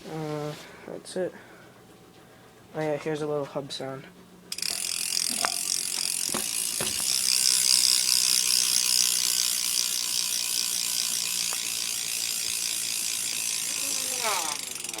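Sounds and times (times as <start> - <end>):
bicycle hub pawls clicking buzz: 4.5 - 15.0.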